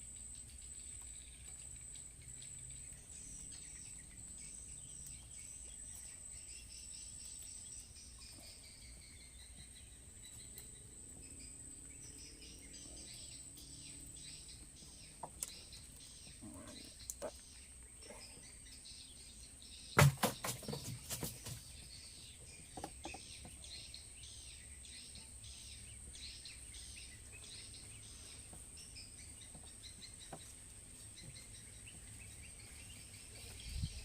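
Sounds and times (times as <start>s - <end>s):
clatter of sharp knocks: 20.0s - 21.6s.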